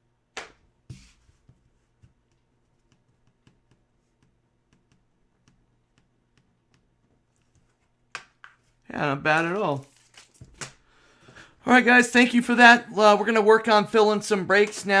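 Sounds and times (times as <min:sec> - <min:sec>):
faint taps of cards: 0:00.4 - 0:08.8.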